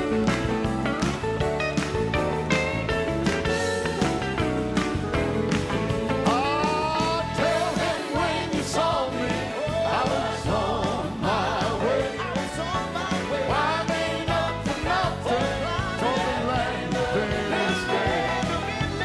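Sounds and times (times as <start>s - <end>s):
live band playing: 0.0s - 19.0s
gospel choir singing: 6.2s - 19.0s.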